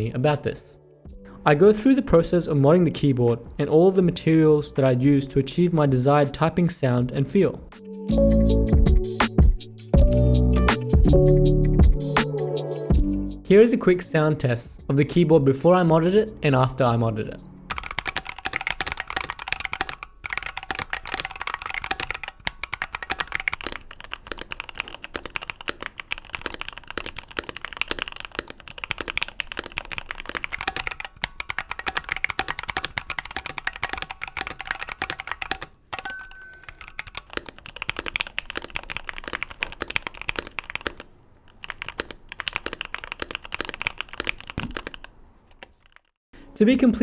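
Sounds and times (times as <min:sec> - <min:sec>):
mechanical keyboard typing: 0:17.7 - 0:46.2.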